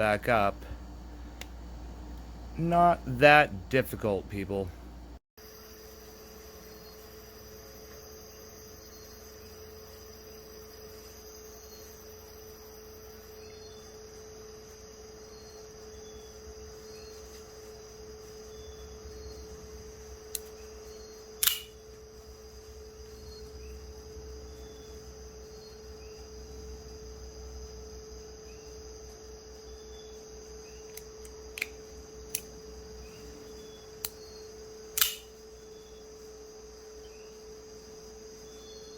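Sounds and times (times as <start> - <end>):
electrical hum: 0.0 - 38.9
folding knife clicking: 21.4 - 21.7, 35.0 - 35.3.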